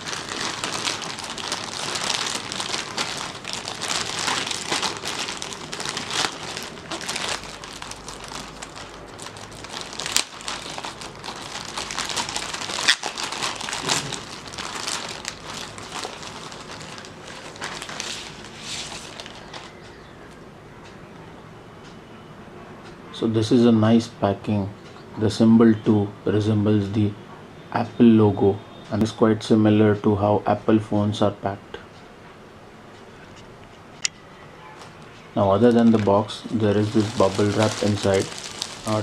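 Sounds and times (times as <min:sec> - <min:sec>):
packaging crinkling and rustling: 0:00.0 - 0:19.8, 0:35.6 - 0:39.0.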